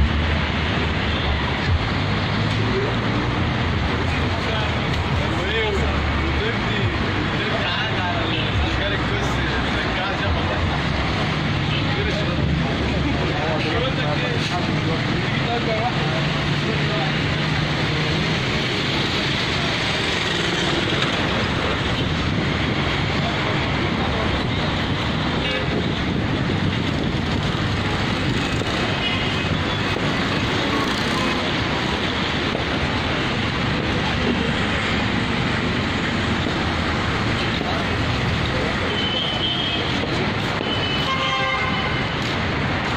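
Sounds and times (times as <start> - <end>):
road traffic hum: 0.0 - 42.9
faint voices: 1.3 - 41.1.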